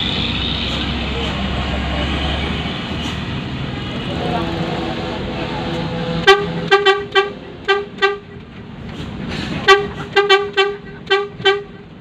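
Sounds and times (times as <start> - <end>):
bus engine: 0.0 - 12.0
road noise: 0.0 - 12.0
bus horn short toots: 5.7 - 8.4, 9.6 - 11.9.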